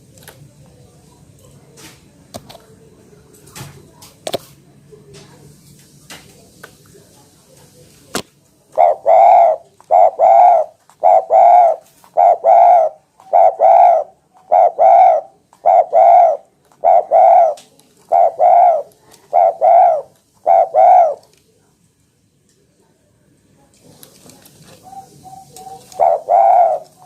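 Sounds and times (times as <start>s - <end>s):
dove cooing: 8.7s - 21.3s, 24.7s - 27.0s.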